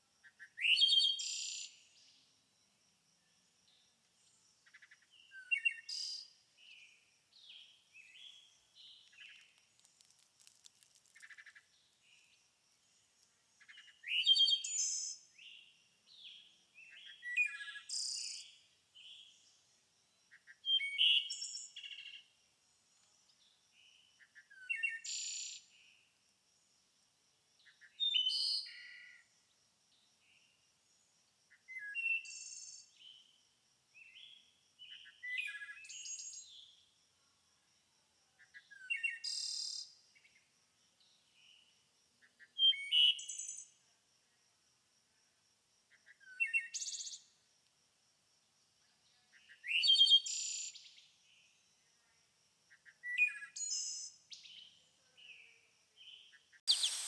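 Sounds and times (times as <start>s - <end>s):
songbirds chirping: 56.0s - 57.0s
faint high-pitched tone: 56.7s - 57.0s.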